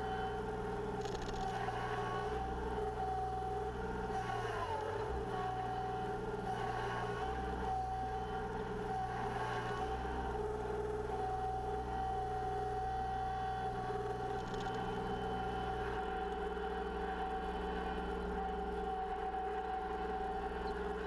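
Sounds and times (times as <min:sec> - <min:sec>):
constant whine: 0:00.0 - 0:21.0.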